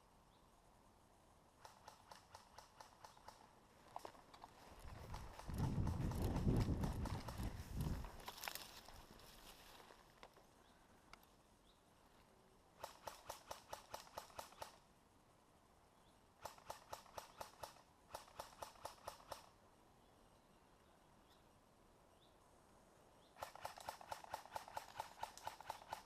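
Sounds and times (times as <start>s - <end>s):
airsoft gun bursts: 23.4s - 26.0s.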